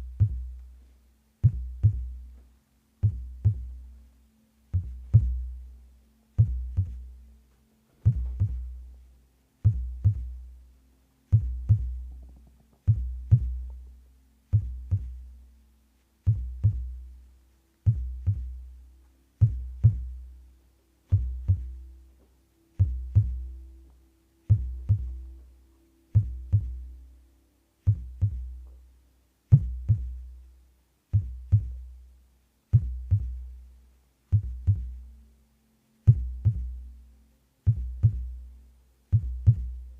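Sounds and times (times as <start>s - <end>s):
heartbeat thumping: 0.0s - 0.6s, 1.4s - 2.4s, 3.0s - 3.9s, 4.7s - 5.7s, 6.4s - 7.2s, 8.0s - 8.9s, 9.6s - 10.4s, 11.3s - 13.9s, 14.5s - 15.3s, 16.2s - 17.0s, 17.8s - 18.7s, 19.4s - 20.2s, 21.1s - 21.9s, 22.8s - 23.6s, 24.4s - 25.4s, 26.1s - 26.9s, 27.8s - 28.6s, 29.5s - 30.2s, 31.1s - 31.8s, 32.7s - 33.5s, 34.3s - 35.0s, 36.1s - 36.8s, 37.6s - 38.4s, 39.1s - 39.9s
faint steady hum: 0.0s - 39.9s.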